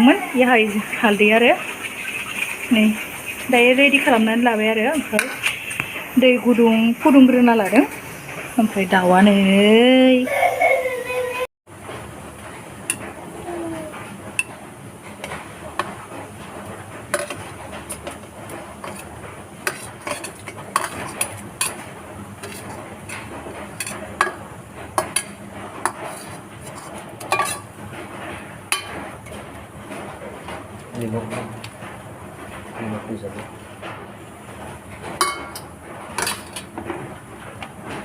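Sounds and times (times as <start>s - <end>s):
spoon clinking against pot: 27.3s - 27.7s, 35.2s - 36.6s.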